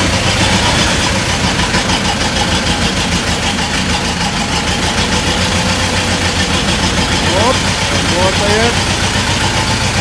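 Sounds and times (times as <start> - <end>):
diesel engine idling: 0.0 - 10.0.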